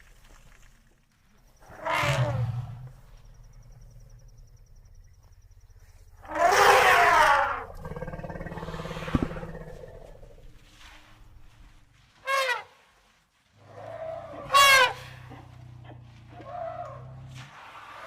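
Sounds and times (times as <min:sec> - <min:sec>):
baby elephant calling: 0:14.0 - 0:15.6.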